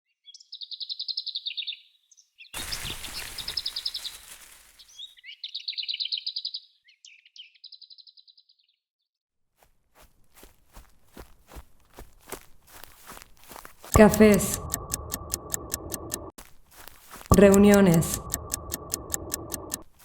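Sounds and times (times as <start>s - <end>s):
bird singing trilled phrases: 4.8s - 8.6s.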